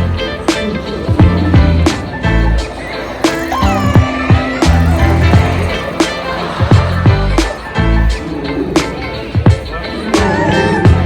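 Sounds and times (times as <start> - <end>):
loud music with heavy bass: 0.0 - 11.0
kick drum beat: 1.1 - 1.9, 3.6 - 7.6, 9.4 - 9.8.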